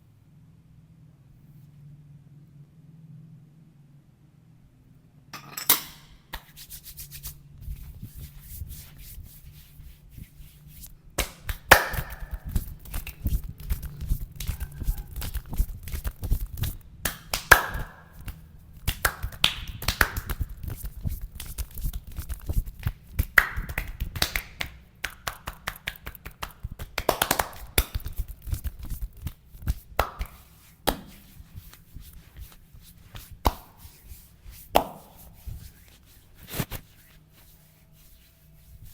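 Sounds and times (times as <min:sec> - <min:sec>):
hands rubbing skin: 0:06.3 - 0:38.9
slaps and taps on skin: 0:11.2 - 0:31.8, 0:33.2 - 0:33.7, 0:34.7 - 0:35.1.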